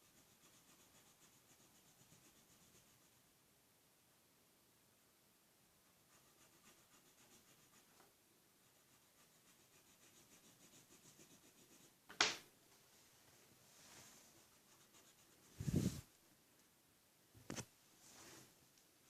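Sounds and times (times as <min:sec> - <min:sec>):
marker rubbing on paper: 0:00.0 - 0:03.2, 0:06.0 - 0:08.0, 0:08.6 - 0:12.0, 0:14.4 - 0:16.1.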